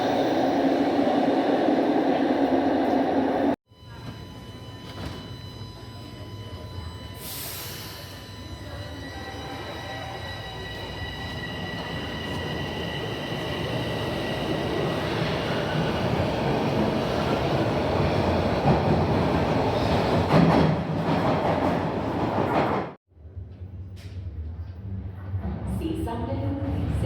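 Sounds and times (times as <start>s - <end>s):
train high whine: 0.0s - 18.7s.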